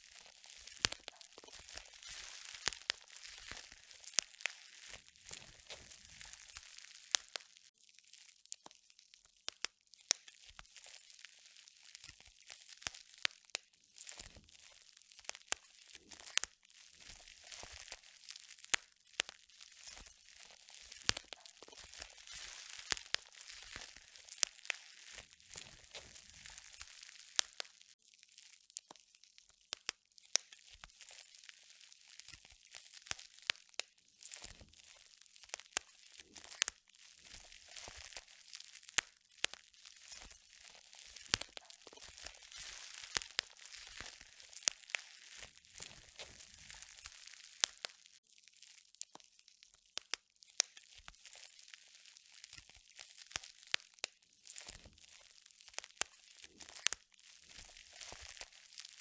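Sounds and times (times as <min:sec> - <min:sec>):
crinkling and crunching: 0:00.0 - 0:59.0.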